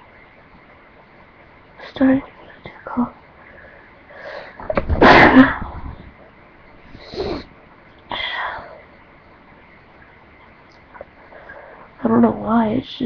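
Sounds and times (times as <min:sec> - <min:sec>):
person sneezing: 0:05.0 - 0:05.6.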